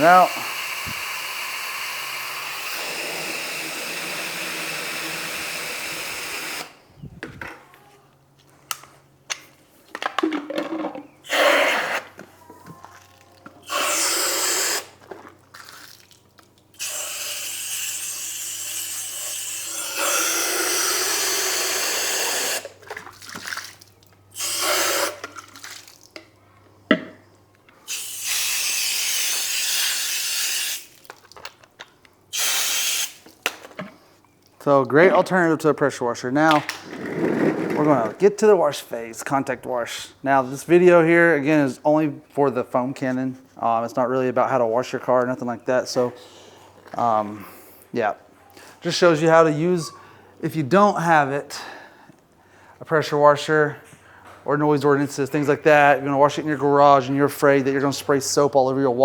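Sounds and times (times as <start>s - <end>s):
foam gun spraying water: 0.0s - 6.8s, 13.6s - 14.9s, 16.8s - 22.7s, 24.3s - 25.3s, 27.9s - 31.0s, 32.3s - 33.2s.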